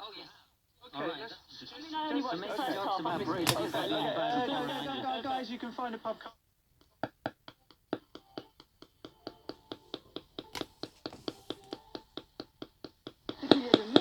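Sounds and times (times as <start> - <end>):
weak radio station: 1.6 - 6.3.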